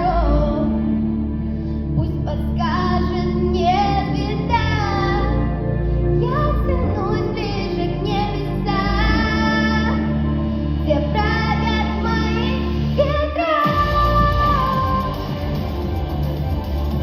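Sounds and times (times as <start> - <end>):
instrumental backing with bass: 0.0 - 17.0
high voice singing: 2.0 - 15.5.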